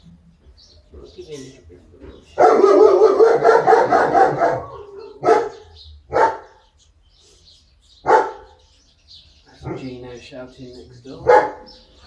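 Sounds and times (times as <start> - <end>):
dog barking: 2.4 - 6.6, 8.0 - 8.6, 11.2 - 11.8.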